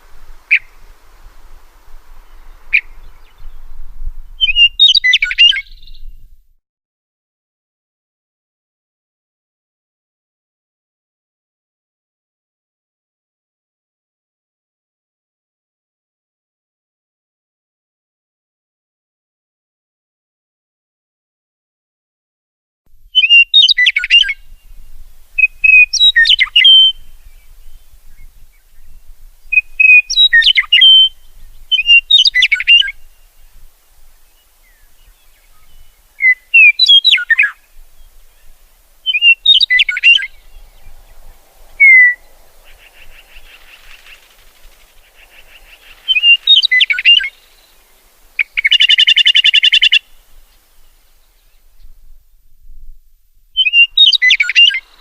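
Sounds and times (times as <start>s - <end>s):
songbird chirping: 0.0s - 6.4s, 23.1s - 52.9s, 53.6s - 55.0s
buzzy bird trill: 23.2s - 27.8s, 29.5s - 33.6s, 34.4s - 50.1s, 53.6s - 55.0s.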